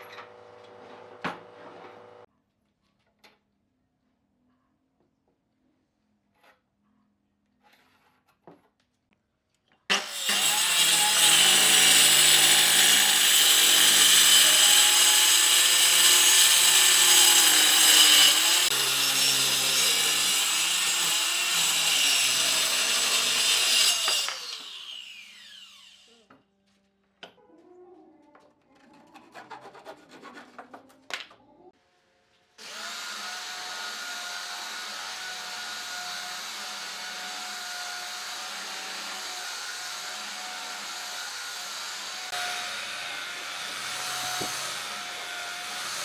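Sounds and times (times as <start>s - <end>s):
power tool cutting wood: 9.9s - 26.2s, 32.6s - 46.0s.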